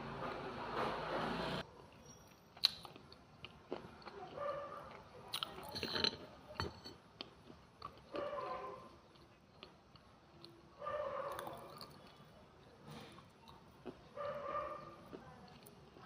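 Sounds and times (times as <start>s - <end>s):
person chewing dry clay: 2.3s - 6.3s, 7.2s - 16.0s.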